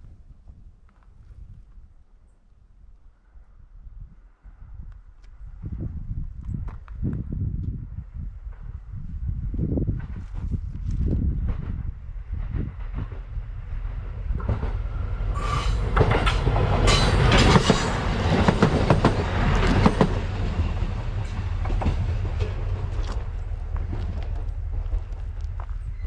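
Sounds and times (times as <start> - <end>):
railcar engine and rolling rumble: 0.0 - 26.0
wheel clacks over rail joints: 14.4 - 24.5.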